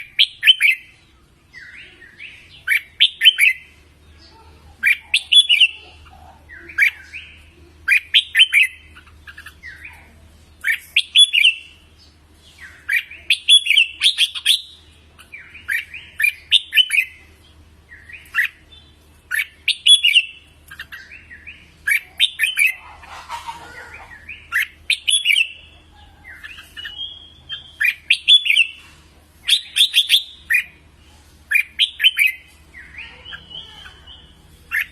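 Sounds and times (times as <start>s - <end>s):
bird whistling phrases: 4.8s - 5.9s, 6.5s - 11.8s, 19.3s - 28.8s, 31.5s - 34.9s.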